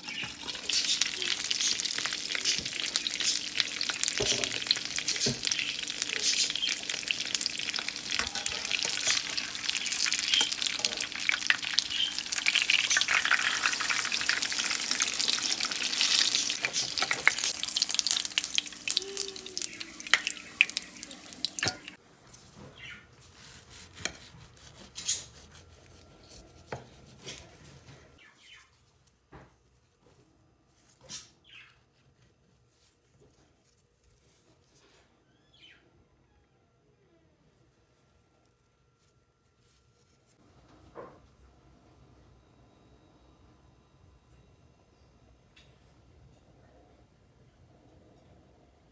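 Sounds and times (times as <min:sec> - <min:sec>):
batter sizzling in a pan: 0:00.0 - 0:22.0.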